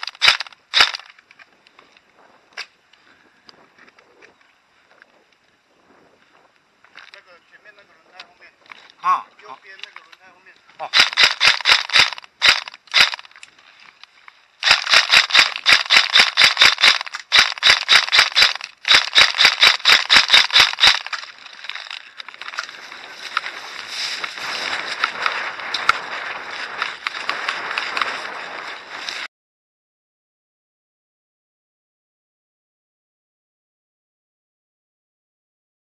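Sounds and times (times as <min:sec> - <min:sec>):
airsoft gun bursts: 0:00.0 - 0:01.1, 0:10.8 - 0:13.3, 0:14.6 - 0:22.0
noisy crackle: 0:09.6 - 0:29.3.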